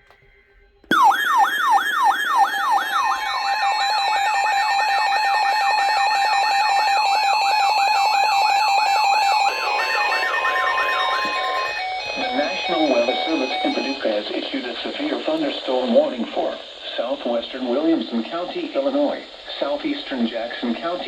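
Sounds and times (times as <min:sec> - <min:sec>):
falling siren-like alarm tone: 0:00.9 - 0:14.3
steady two-tone attention signal: 0:00.9 - 0:14.4.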